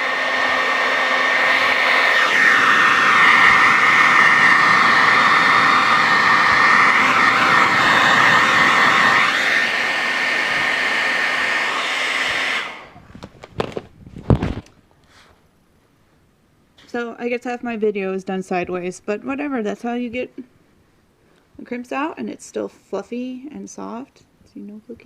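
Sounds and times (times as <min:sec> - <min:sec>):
hair dryer blowing with whine: 0:00.0 - 0:14.6.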